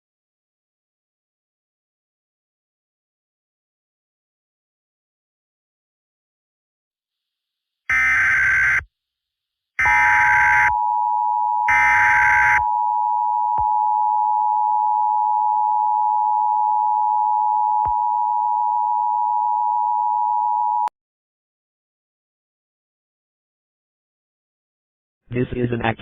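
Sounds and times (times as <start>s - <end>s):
harsh data bursts: 7.9s - 8.8s.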